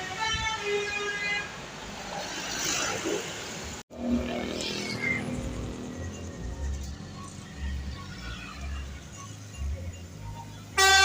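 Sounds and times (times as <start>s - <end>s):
steady engine hum: 3.6s - 11.0s.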